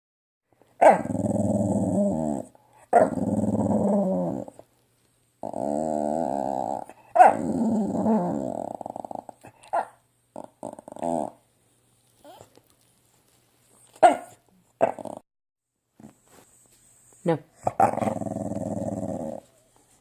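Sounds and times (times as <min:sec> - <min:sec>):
dog growling grumbles: 0:00.9 - 0:04.6, 0:05.4 - 0:09.7, 0:10.4 - 0:11.4, 0:14.8 - 0:15.2, 0:17.6 - 0:19.6.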